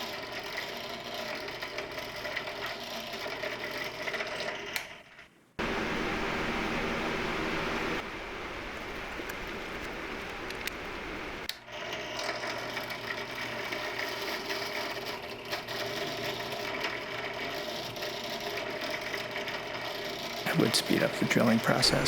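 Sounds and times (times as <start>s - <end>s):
drill press motor whirring: 5.6s - 11.5s
steady hiss: 5.6s - 11.5s, 20.5s - 22.0s.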